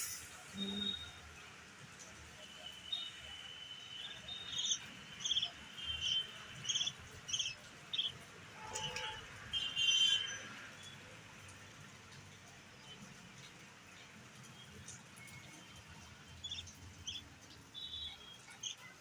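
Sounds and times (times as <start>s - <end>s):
thin steady high tone: 0.0s - 1.2s
young bird chirping: 4.6s - 8.2s.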